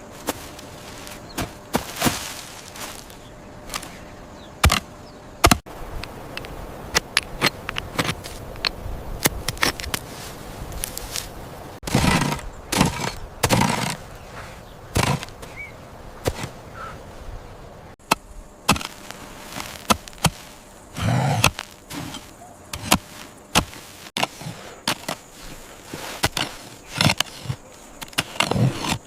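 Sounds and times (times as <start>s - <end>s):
sharp cracks and knocks: 4.6s - 5.7s, 14.9s - 15.6s.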